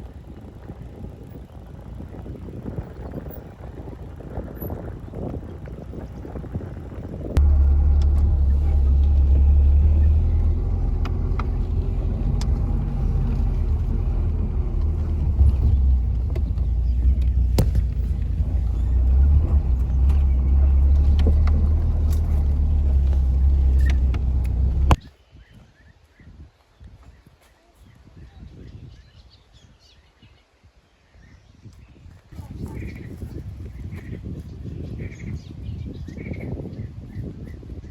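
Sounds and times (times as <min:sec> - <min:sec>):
vehicle engine and road rumble: 0:00.0 - 0:25.1, 0:31.9 - 0:37.9
light knocks and rattles: 0:07.4 - 0:25.0.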